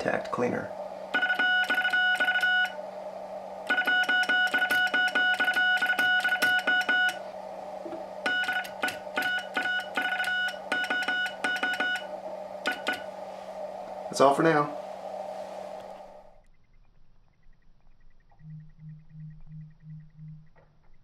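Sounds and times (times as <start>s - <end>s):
steady low hum: 0.0s - 21.0s
morse code sidetone beeps: 1.1s - 2.8s, 3.7s - 7.2s, 8.2s - 13.1s.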